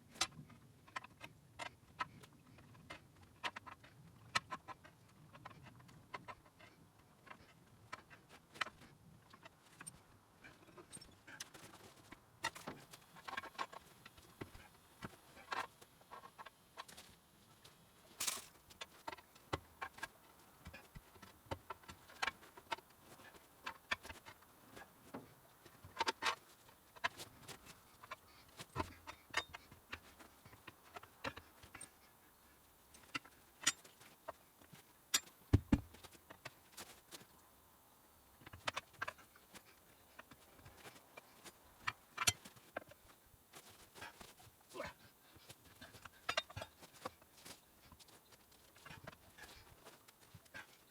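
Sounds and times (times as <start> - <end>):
pry bars clinking on metal rim: 35.1 - 35.3.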